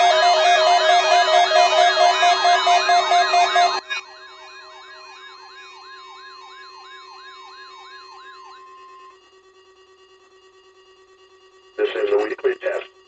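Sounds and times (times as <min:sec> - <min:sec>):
electronic siren yelping: 0:00.0 - 0:09.2
steady electronic tones: 0:11.8 - 0:12.8.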